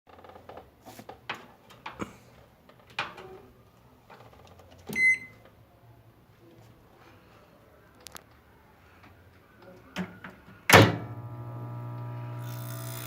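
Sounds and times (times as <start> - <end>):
low steady hum: 11.0 - 13.0.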